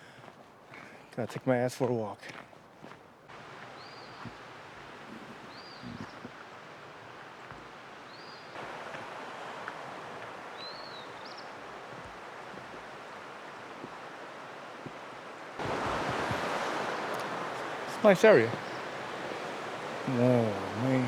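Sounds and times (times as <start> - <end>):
stream water rushing: 3.3 - 21.0
bird chirping: 5.5 - 6.3, 17.1 - 19.0.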